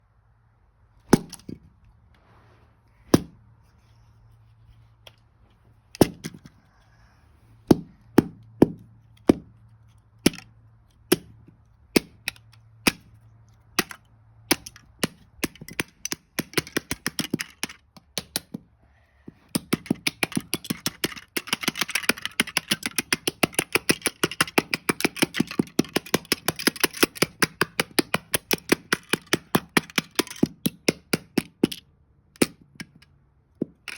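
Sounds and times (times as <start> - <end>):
plastic bricks snapping apart: 1.0 - 1.7, 3.1 - 3.4, 5.9 - 6.7, 7.6 - 9.6, 10.2 - 18.7, 19.5 - 33.9
loose pieces clattering: 19.6 - 30.5, 33.7 - 33.9.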